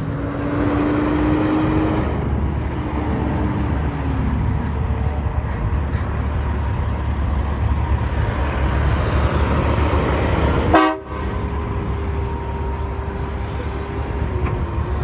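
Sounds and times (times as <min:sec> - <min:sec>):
road traffic rumble: 0:00.0 - 0:15.0
horn blast: 0:10.6 - 0:12.9.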